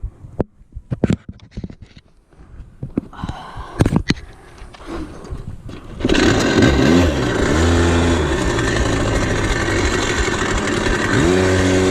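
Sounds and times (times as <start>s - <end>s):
dirt bike engine revving: 5.9s - 11.9s.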